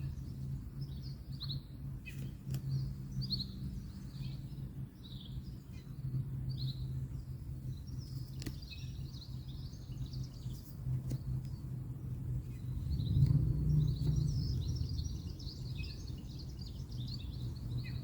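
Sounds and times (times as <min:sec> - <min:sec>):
distant road noise hum: 0:00.0 - 0:18.0
small birds chirping: 0:00.0 - 0:18.0.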